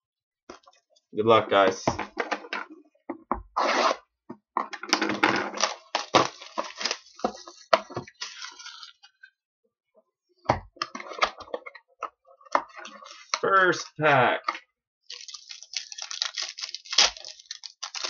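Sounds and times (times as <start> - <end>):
cardboard rustling: 4.9 - 8.9, 15.1 - 18.0
crinkling plastic: 5.1 - 9.0, 15.1 - 18.0.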